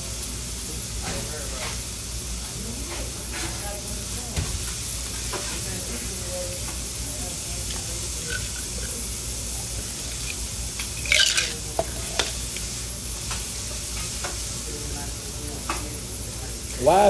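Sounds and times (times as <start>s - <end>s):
food sizzling in a pan: 0.0s - 17.0s
metal utensil clinks and scrapes: 8.2s - 8.9s.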